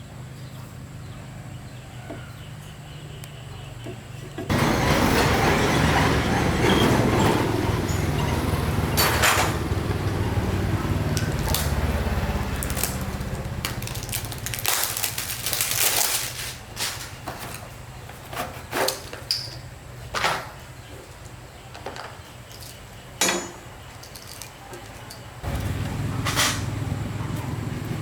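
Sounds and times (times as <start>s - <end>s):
motor running: 4.5s - 14.6s, 25.4s - 28.0s
tools and metal parts clinking: 12.4s - 17.7s, 18.3s - 20.7s, 21.7s - 25.4s.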